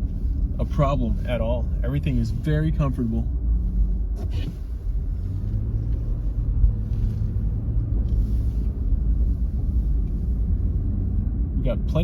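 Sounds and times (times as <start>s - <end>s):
car cabin tyre drone: 0.0s - 12.0s.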